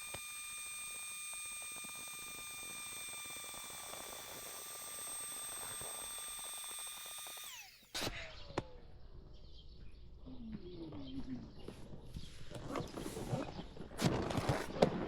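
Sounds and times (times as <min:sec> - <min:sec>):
cordless drill motor whirring: 0:00.0 - 0:08.4.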